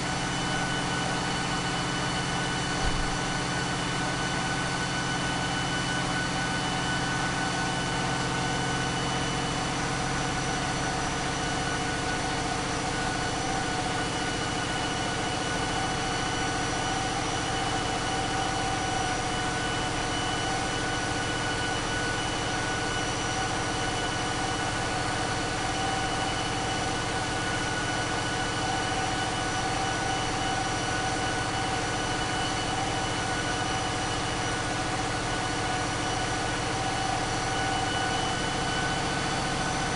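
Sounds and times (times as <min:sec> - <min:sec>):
diesel engine drone: 0:00.0 - 0:39.9
high whine: 0:34.6 - 0:39.9.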